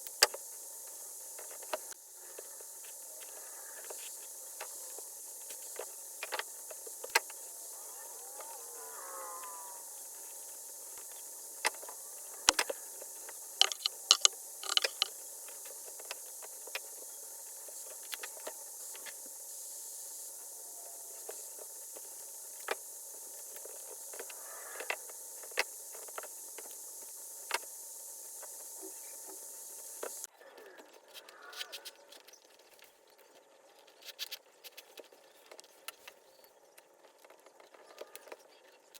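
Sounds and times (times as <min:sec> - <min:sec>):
steady hiss: 0:00.0 - 0:32.9
sharp clicks and taps: 0:13.6 - 0:15.1.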